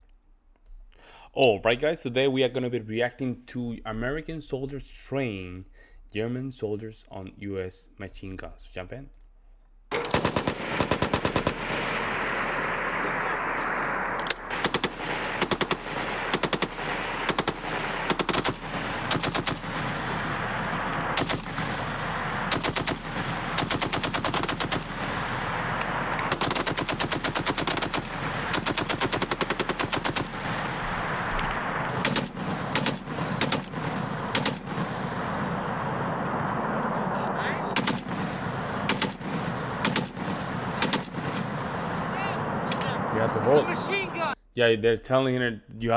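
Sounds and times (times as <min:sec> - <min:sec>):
machine gun automatic fire: 0:09.9 - 0:44.4.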